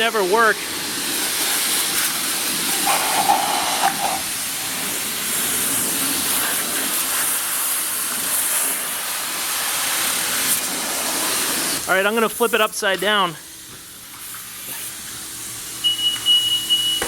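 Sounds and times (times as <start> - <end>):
pressure washer spraying water: 0.0 - 17.0
brief tone: 15.8 - 17.0.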